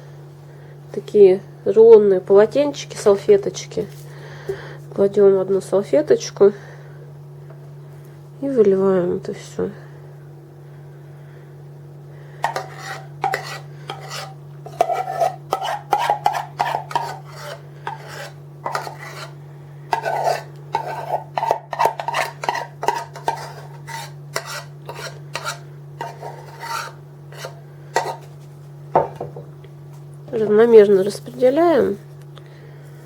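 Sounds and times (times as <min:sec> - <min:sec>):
spoon scraping a pan: 0:12.4 - 0:28.3.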